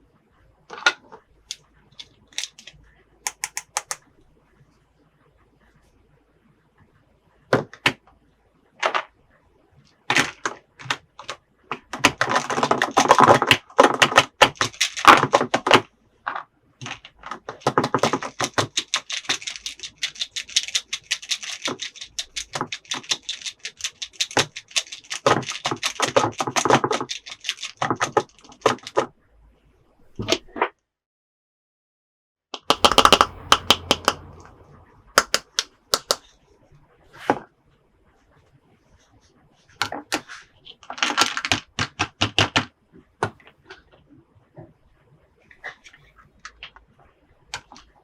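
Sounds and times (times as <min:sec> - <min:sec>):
plastic toy pieces clicking: 0:02.0 - 0:04.0, 0:10.1 - 0:15.9, 0:16.8 - 0:29.0, 0:32.6 - 0:34.2, 0:35.2 - 0:36.3, 0:40.8 - 0:42.7.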